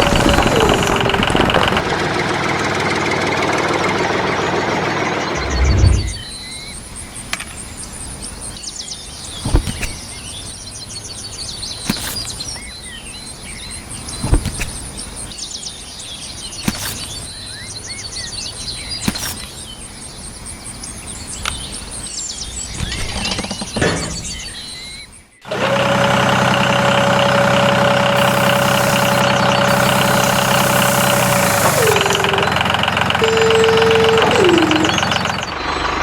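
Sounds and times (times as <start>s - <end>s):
small birds chirping: 5.0s - 25.4s, 28.1s - 36.0s
high pulsing buzz: 5.3s - 6.3s, 28.2s - 35.4s.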